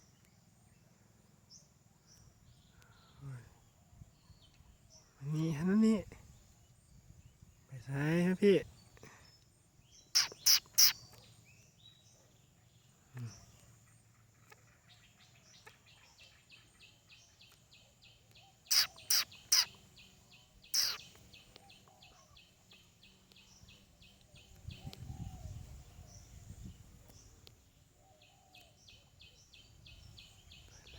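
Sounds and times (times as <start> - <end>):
loud sharp animal calls: 10.1 - 11.0, 18.6 - 19.9, 20.7 - 21.2
animal chirping: 10.1 - 11.2, 18.5 - 22.4.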